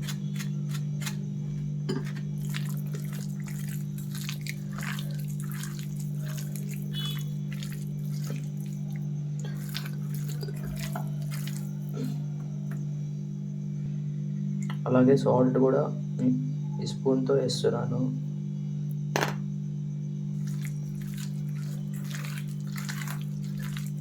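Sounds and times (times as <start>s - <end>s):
steady electrical hum: 0.0s - 24.0s
wet squishing of raw chicken: 2.3s - 12.3s, 20.4s - 24.0s.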